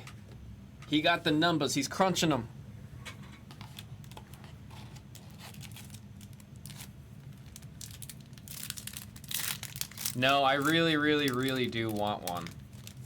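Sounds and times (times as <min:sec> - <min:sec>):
steady low hum: 0:00.0 - 0:13.0
cards and packaging rustling: 0:03.5 - 0:13.0.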